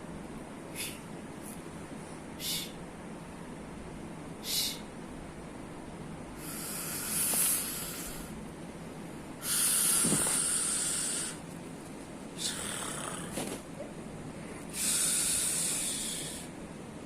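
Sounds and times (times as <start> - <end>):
breathy hissing noise: 0.7 - 1.6, 2.4 - 2.8, 4.4 - 4.9, 6.4 - 8.4, 9.4 - 11.5, 12.4 - 13.6, 14.4 - 16.6.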